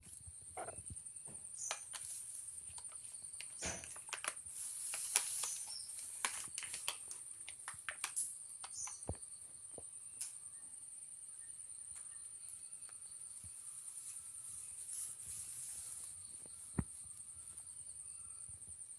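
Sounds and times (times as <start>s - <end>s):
food packet rustling and crackling: 1.6s - 9.2s, 13.9s - 16.7s.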